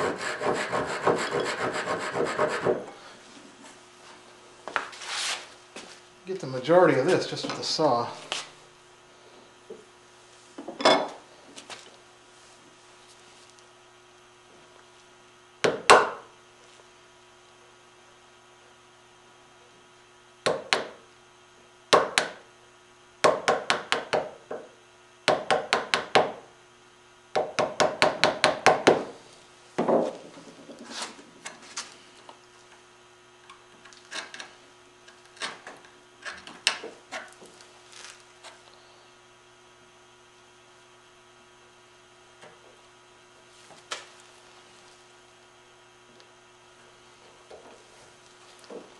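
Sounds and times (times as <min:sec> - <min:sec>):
hand saw cutting wood: 0:00.0 - 0:02.9.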